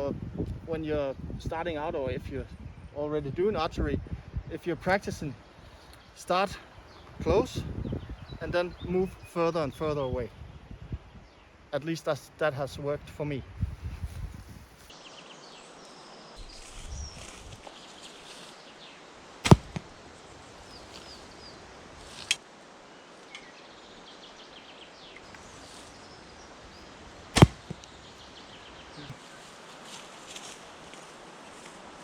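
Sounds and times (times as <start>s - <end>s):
arrow knocking: 19.5s - 19.9s, 27.4s - 27.9s
bow string snapping on release: 19.5s - 19.9s, 27.4s - 27.9s.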